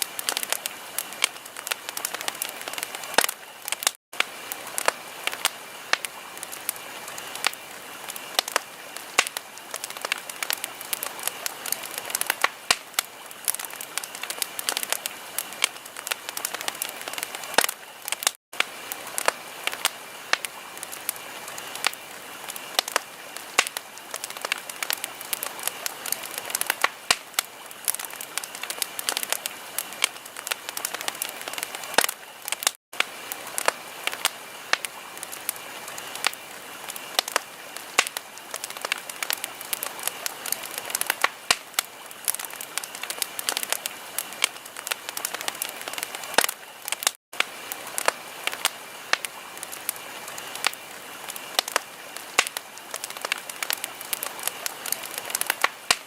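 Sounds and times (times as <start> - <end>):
wood fire crackling: 0.0 - 56.0.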